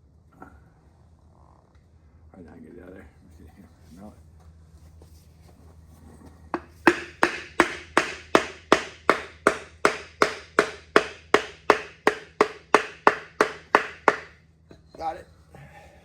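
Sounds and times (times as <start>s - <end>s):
ringing hammer taps on metal: 6.6s - 15.1s.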